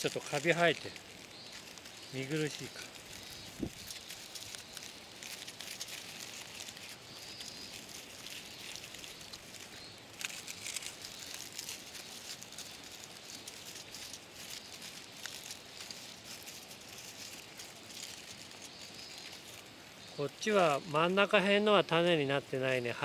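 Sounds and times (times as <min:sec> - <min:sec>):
dry seed crackles: 0:00.0 - 0:23.0
seed heads rustling by hand: 0:00.0 - 0:23.0.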